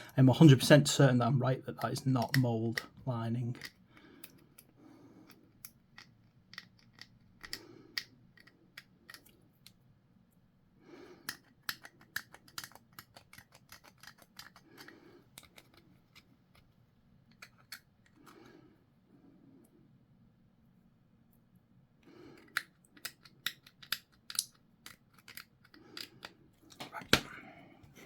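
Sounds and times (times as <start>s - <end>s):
plastic pieces handling: 22.4s - 27.3s.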